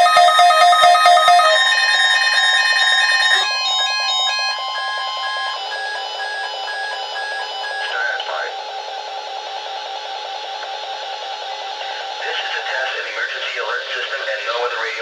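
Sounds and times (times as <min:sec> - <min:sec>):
electronic alert tone beeping: 0:00.0 - 0:08.4.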